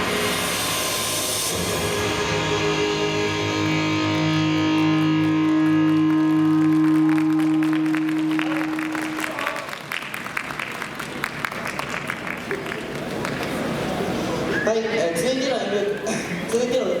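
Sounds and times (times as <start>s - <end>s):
dance music held chord: 0.0s - 9.4s
audience clapping: 3.4s - 14.2s.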